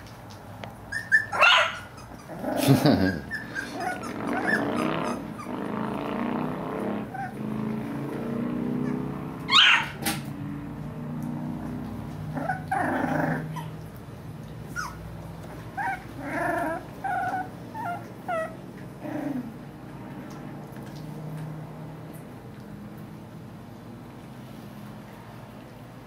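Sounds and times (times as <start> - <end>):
puppies whimpering and yipping: 0.8 - 5.7, 7.1 - 7.4, 8.8 - 10.0, 11.6 - 19.6.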